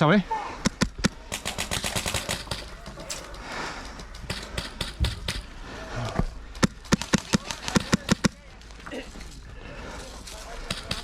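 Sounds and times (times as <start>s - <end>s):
airsoft gunshots: 0.7s - 3.4s.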